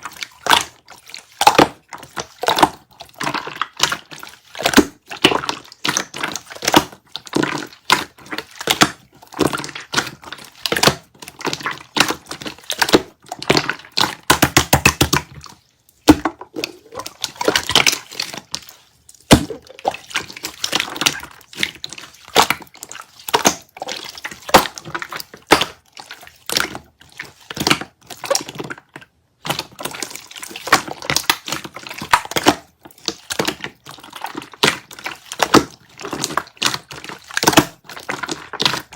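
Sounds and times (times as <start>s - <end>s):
slime squished by hand: 0.0s - 38.9s.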